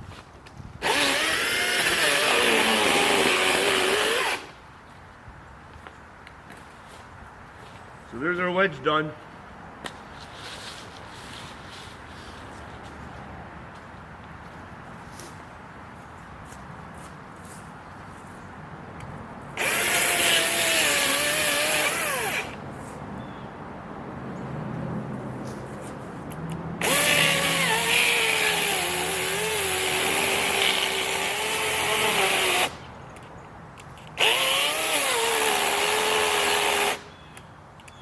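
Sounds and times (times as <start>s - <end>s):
electric chainsaw cutting tree: 0.8s - 4.6s, 19.6s - 22.6s, 26.8s - 32.9s, 34.1s - 37.2s.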